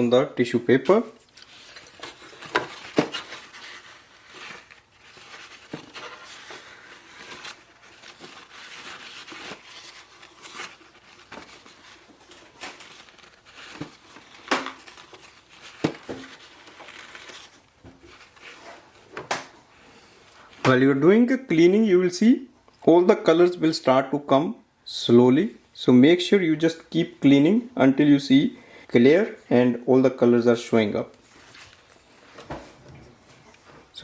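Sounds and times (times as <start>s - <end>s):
damp tissue paper rubbing: 1.5s - 18.9s.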